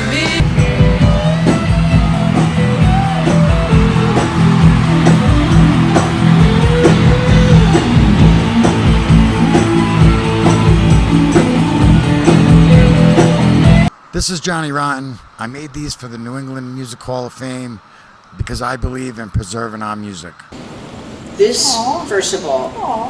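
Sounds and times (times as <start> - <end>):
drum beat: 0.0 - 13.9
rock guitar: 0.0 - 13.9.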